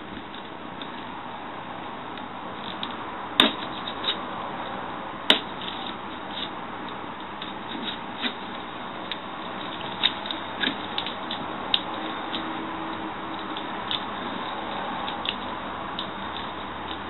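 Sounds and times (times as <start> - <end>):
sharp cardboard snaps: 2.6 - 4.2, 5.3 - 6.6, 7.2 - 12.5.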